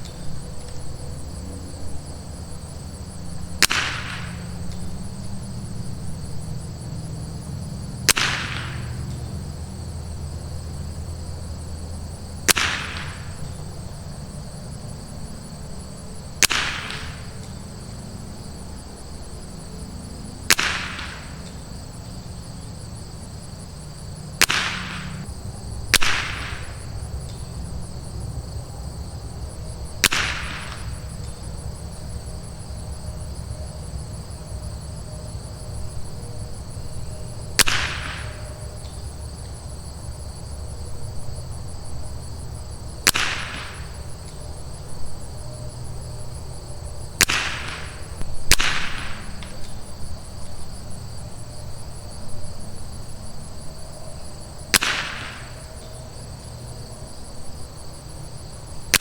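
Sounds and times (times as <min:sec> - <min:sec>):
insects droning: 0:00.0 - 0:59.0
rifle shots: 0:03.6 - 0:04.9, 0:08.0 - 0:09.4, 0:12.5 - 0:13.8, 0:16.4 - 0:17.8, 0:20.5 - 0:21.6, 0:24.4 - 0:27.0, 0:30.0 - 0:31.3, 0:37.6 - 0:38.9, 0:43.0 - 0:44.2, 0:47.2 - 0:49.9, 0:54.7 - 0:55.8.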